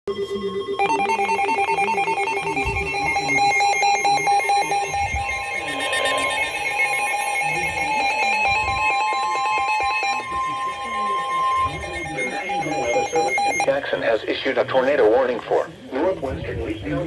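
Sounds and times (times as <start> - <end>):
low wavering tones: 0.1 - 13.7
fast ringing beeps: 0.1 - 14.1
steady alert tone: 0.1 - 14.1.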